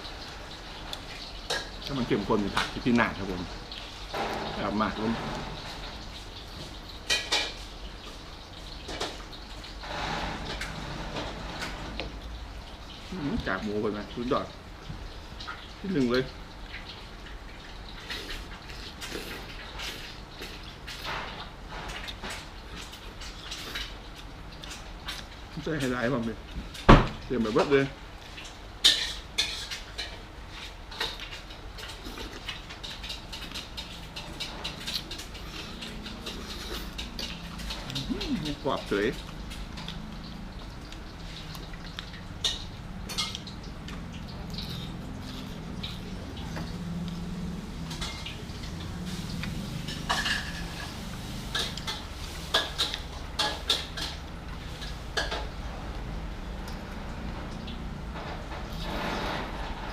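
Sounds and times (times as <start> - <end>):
utensils clinking against bowl: 28.8 - 40.2.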